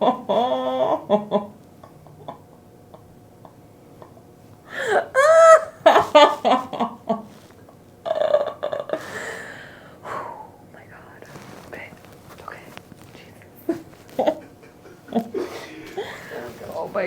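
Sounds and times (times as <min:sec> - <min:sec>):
young woman squealing and crying out: 0:04.8 - 0:06.1.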